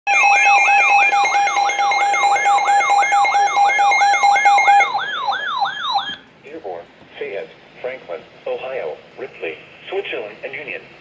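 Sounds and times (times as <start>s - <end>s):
steady warning alarm tone: 0.1s - 6.2s
sweeping alert siren: 0.1s - 6.2s.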